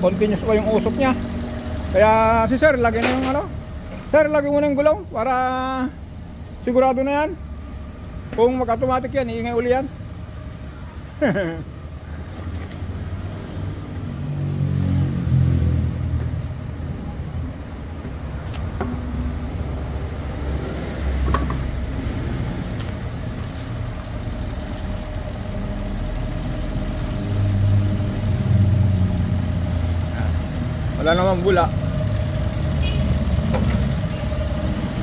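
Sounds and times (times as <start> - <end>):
car engine idling: 0.0 - 14.2, 15.9 - 35.0
thin steady whine: 16.7 - 35.0.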